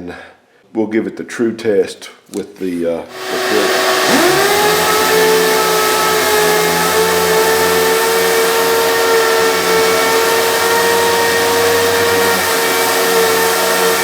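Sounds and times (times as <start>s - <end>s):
pneumatic sander whine: 3.1s - 14.0s.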